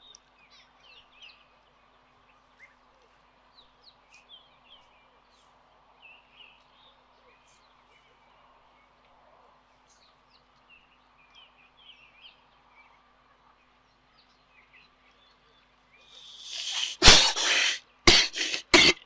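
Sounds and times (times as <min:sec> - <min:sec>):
baboon sneezing: 0:16.2 - 0:19.0.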